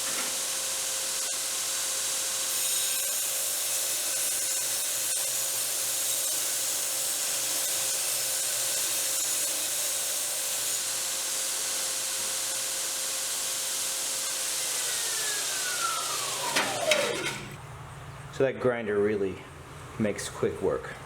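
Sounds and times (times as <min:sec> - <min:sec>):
belt grinder grinding steel: 0:00.0 - 0:17.6
motor whine spinning down: 0:14.5 - 0:17.6.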